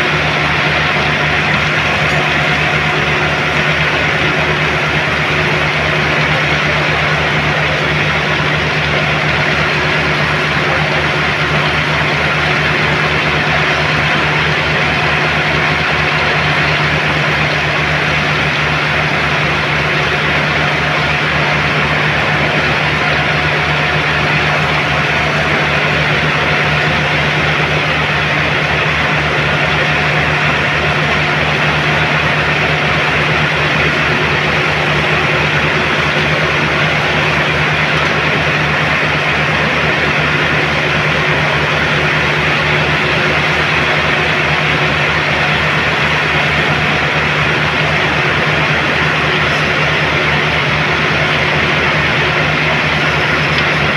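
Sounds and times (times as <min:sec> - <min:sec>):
heavy engine running steadily: 0:00.0 - 0:53.9.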